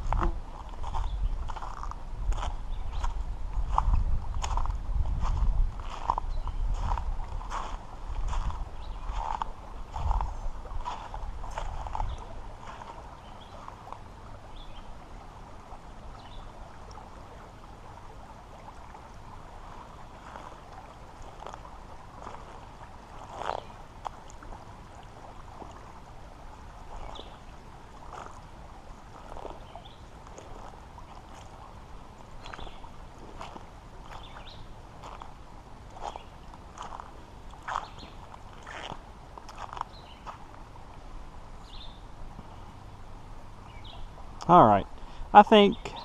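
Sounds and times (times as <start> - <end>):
water running over rocks: 0.0 - 46.0.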